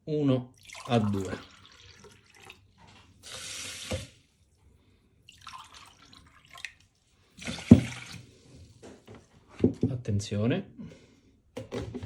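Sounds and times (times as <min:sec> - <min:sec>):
tap water running and dripping: 0:00.6 - 0:04.4, 0:05.3 - 0:09.4
knock: 0:09.6 - 0:10.0.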